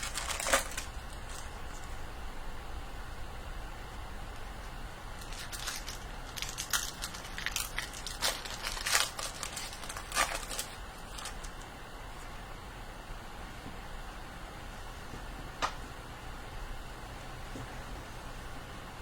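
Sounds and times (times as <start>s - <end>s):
foil wrapper crinkling: 0.0s - 2.0s, 5.2s - 11.7s.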